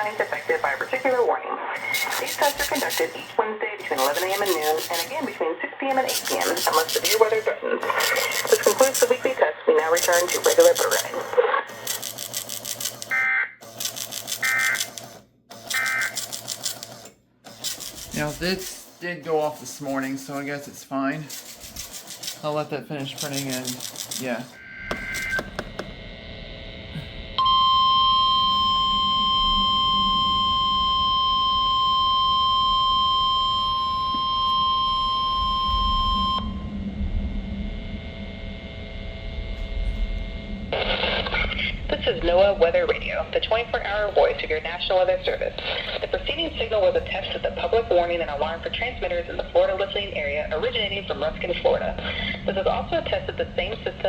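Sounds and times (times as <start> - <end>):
printer rasping: 0.0 - 1.2, 1.8 - 25.9
printer high whine: 0.0 - 42.6
steady high alarm tone: 0.0 - 43.2.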